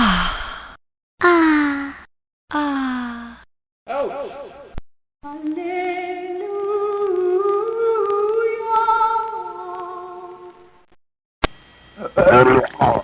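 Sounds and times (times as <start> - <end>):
sharp click: 11.4 - 11.6.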